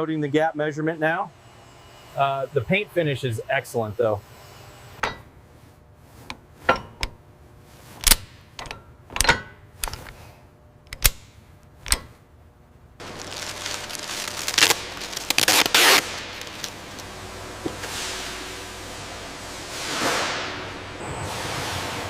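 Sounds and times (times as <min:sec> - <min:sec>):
noisy industrial background: 0:00.0 - 0:22.0
sharp metal knocks: 0:05.0 - 0:05.3.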